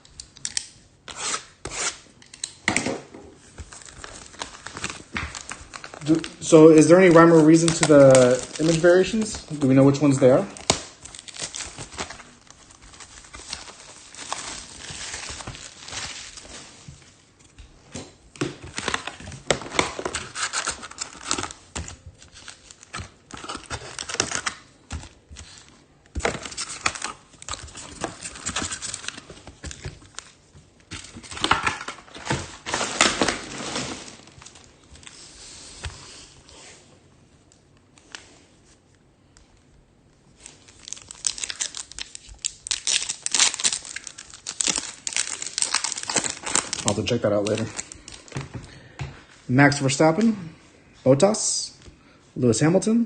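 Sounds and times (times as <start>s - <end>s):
foil wrappers crinkling and tearing: 3.4s - 17.6s, 18.4s - 35.8s, 40.4s - 48.7s
cards being handled: 3.6s - 12.2s.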